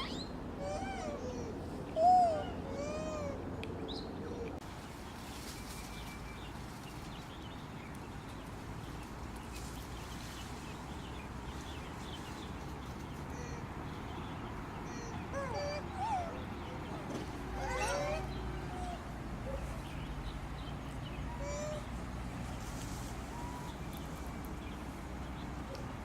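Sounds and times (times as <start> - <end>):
macaques cooing: 0.0 - 3.5, 14.9 - 19.8, 21.3 - 21.9.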